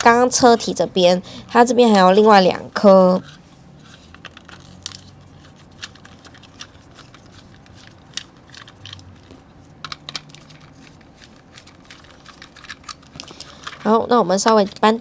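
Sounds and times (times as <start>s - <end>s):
small clicks of plastic parts: 5.8s - 14.9s.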